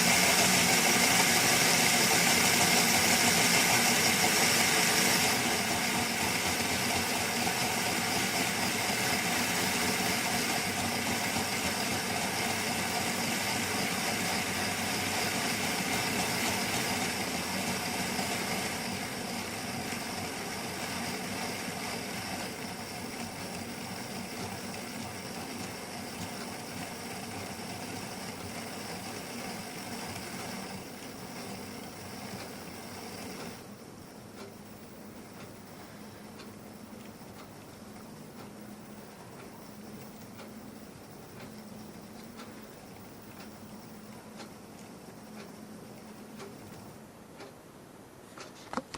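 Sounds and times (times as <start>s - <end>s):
model locomotive engine idle: 0.0s - 33.7s.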